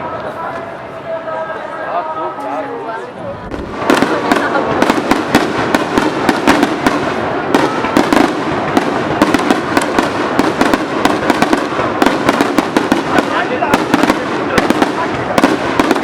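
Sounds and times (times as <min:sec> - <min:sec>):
fireworks bangs and crackles: 0:03.3 - 0:16.0.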